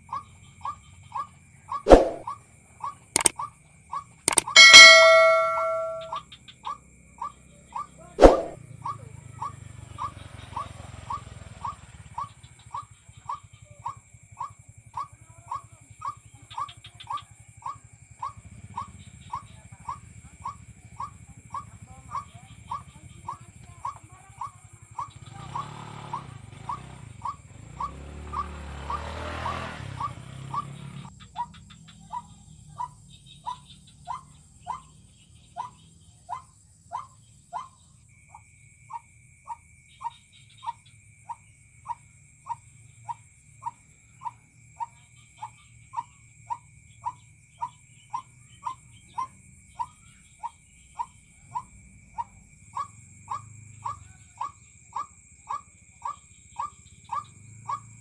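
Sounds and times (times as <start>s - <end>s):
background noise: 4.3s - 6.2s
waterhen calling: 4.4s - 6.1s.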